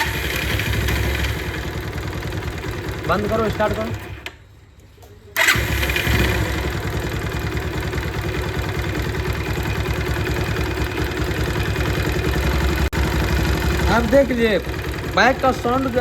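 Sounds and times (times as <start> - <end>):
electric starter cranking: 0.0 - 1.9, 2.5 - 4.4, 5.4 - 7.4
motorcycle engine idling: 0.0 - 4.3, 5.4 - 16.0.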